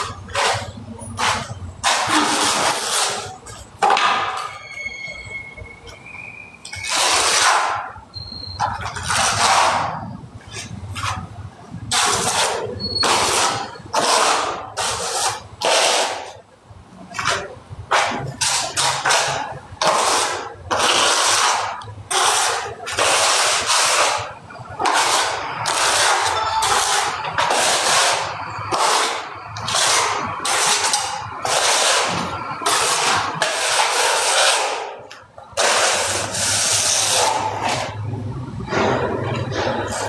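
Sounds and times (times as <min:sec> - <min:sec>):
harsh scraping strokes: 0:17.2 - 0:38.0.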